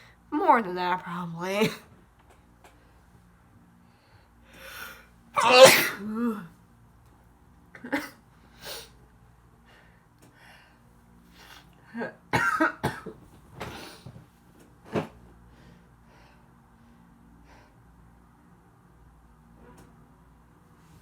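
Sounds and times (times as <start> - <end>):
person sneezing: 5.4 - 6.4.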